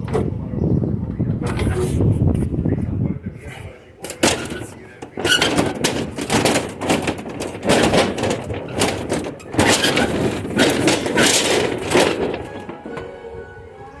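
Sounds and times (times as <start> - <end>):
storm shutter slats clattering: 4.0 - 13.1.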